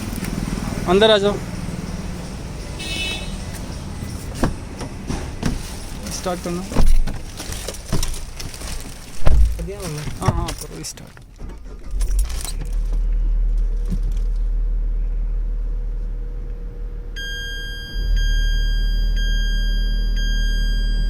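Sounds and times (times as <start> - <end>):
car engine running: 0.0 - 21.0
car starting clicks: 9.2 - 14.5
high electronic tone: 17.2 - 21.0.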